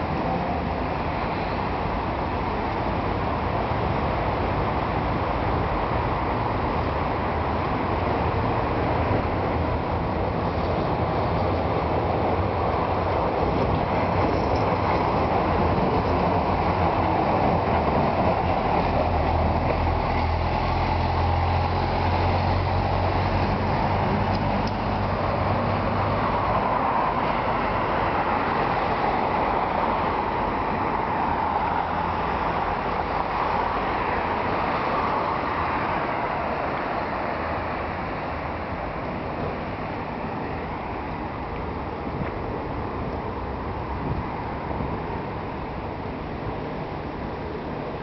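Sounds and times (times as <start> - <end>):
street traffic: 0.0 - 48.0.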